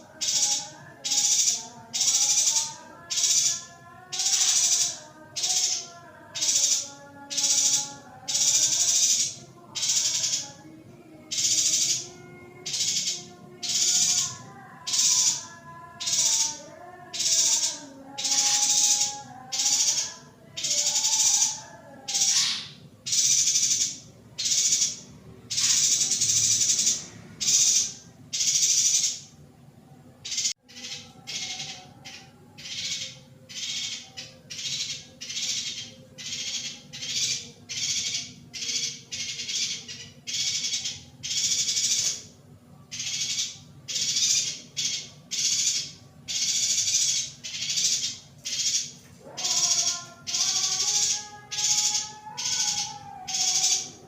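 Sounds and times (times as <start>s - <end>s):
bird chattering calls: 0.0s - 10.6s, 11.3s - 29.4s, 30.2s - 54.0s.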